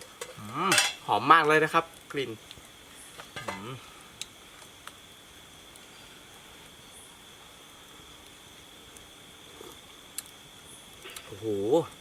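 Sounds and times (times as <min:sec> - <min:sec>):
high-pitched insect drone: 0:00.4 - 0:09.7
faint clicks: 0:04.2 - 0:05.0.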